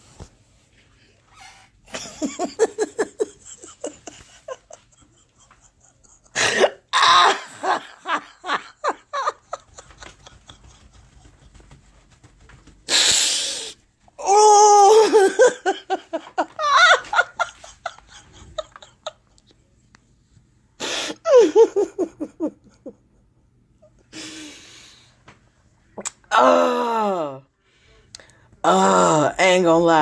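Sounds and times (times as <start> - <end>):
person laughing hard: 1.9 - 11.7, 14.3 - 19.4, 21.1 - 23.0.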